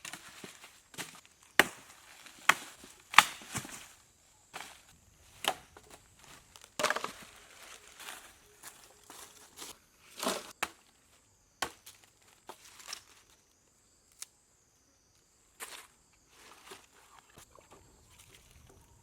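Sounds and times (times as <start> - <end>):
rustles and crackles: 0.0 - 10.6.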